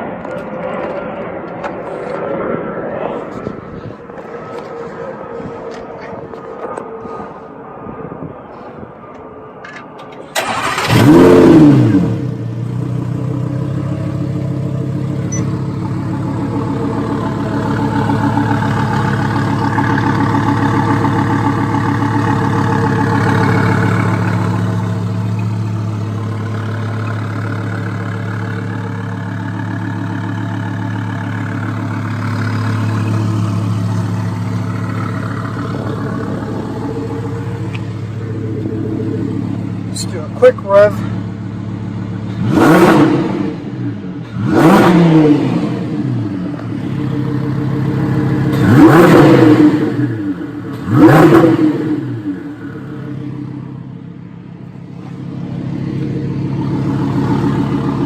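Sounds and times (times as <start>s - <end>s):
car engine idling: 8.5s - 58.0s
car engine starting and revving: 10.0s - 58.0s.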